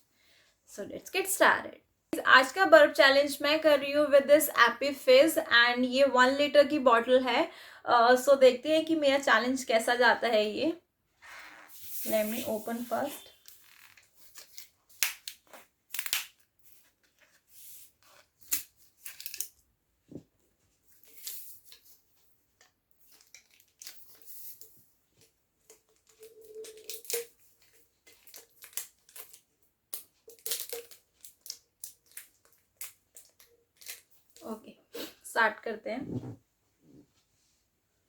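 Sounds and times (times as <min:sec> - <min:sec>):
plastic tearing: 0:13.3 - 0:16.5, 0:26.1 - 0:34.4
plastic bottle crinkling: 0:25.7 - 0:34.5.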